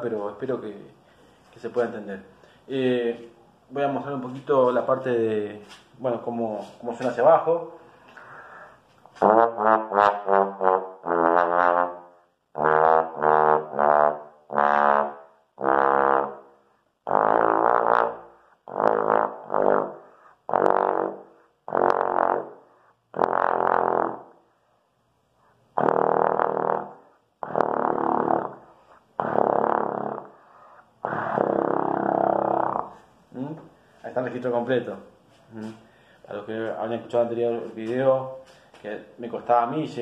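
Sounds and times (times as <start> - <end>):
player breathing: 1.0 - 1.6, 7.8 - 8.9, 35.6 - 36.3, 38.4 - 38.8
trombone low notes: 9.2 - 24.4, 25.8 - 30.3.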